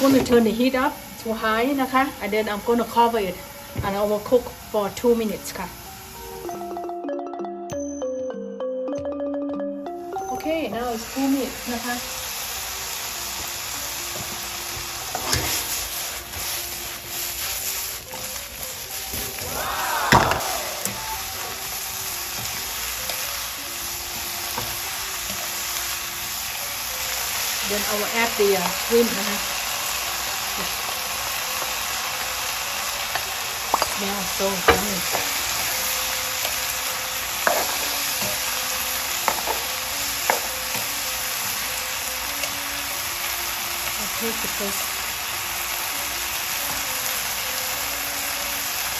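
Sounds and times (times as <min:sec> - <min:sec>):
vegetables sizzling in oil: 0:00.0 - 0:06.8, 0:10.0 - 0:48.9
spatula stirring in pan: 0:11.2 - 0:47.0
spatula scraping pan: 0:14.2 - 0:19.4, 0:33.7 - 0:40.9.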